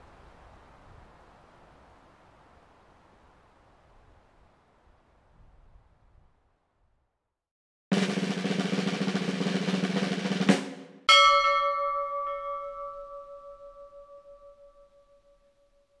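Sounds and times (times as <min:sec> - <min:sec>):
snare drum roll: 0:07.9 - 0:12.6
bell strike ringing: 0:11.1 - 0:15.5.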